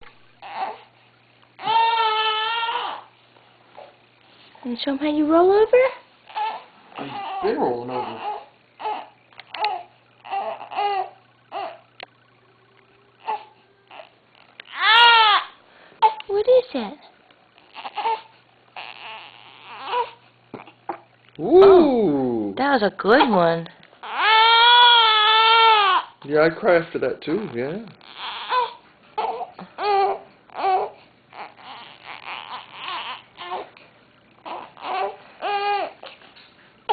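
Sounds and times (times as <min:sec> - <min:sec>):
infant cooing and babbling: 0:00.4 - 0:00.9, 0:01.6 - 0:03.1, 0:06.3 - 0:11.9, 0:13.2 - 0:16.2, 0:17.7 - 0:20.8, 0:24.0 - 0:26.1, 0:28.0 - 0:33.7, 0:34.4 - 0:36.1
infant cry-like squeal: 0:00.4 - 0:00.9, 0:01.6 - 0:03.1, 0:06.3 - 0:11.9, 0:13.2 - 0:15.6, 0:17.7 - 0:20.2, 0:24.0 - 0:26.2, 0:28.0 - 0:33.7, 0:34.4 - 0:36.1.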